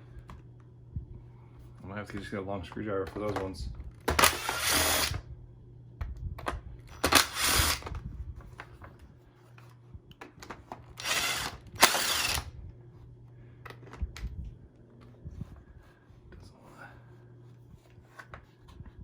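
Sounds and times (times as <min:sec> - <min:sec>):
cordless screw gun whirring: 0:04.1 - 0:05.2, 0:06.9 - 0:08.0, 0:11.0 - 0:12.5.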